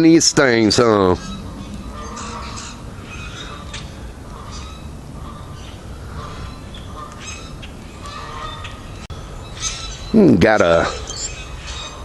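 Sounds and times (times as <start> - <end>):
low rumble: 0.0 - 7.0
bird chirps: 0.7 - 12.0.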